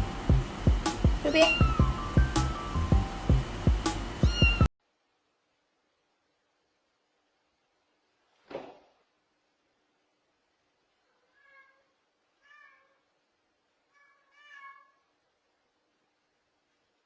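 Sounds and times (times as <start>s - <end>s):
cat meowing softly: 1.3s - 1.9s, 4.2s - 4.7s, 11.0s - 13.1s, 13.8s - 15.2s.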